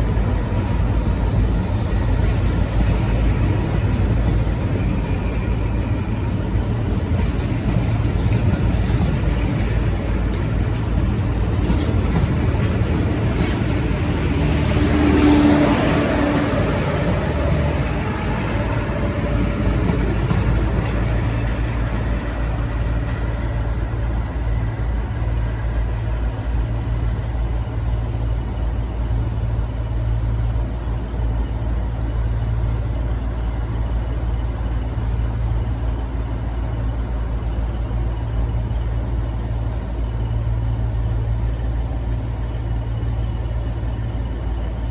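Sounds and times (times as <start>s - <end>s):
diesel train engine rumble: 0.0s - 44.9s.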